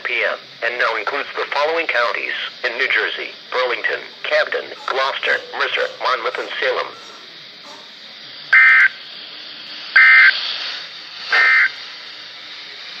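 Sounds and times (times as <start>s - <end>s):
steady radio hiss: 0.0s - 13.0s
warbling digital data bursts: 2.9s - 7.2s, 8.5s - 9.0s, 11.3s - 11.8s.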